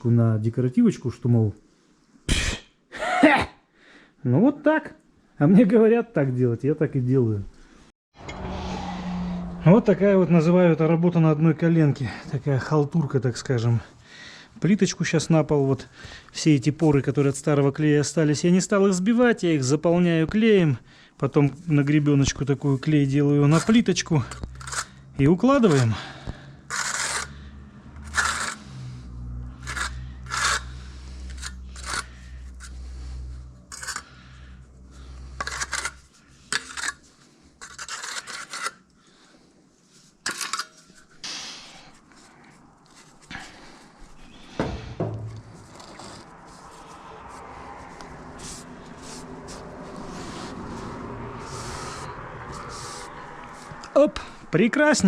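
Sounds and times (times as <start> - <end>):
soft trowel rubbing: 22.6 - 26.0, 26.7 - 27.3, 28.0 - 38.9, 45.3 - 53.8
trowel scraping adhesive: 22.9 - 26.0, 26.7 - 27.4, 28.0 - 28.8, 29.5 - 33.0, 33.7 - 34.2, 35.0 - 38.9, 45.3 - 46.9, 48.4 - 53.8.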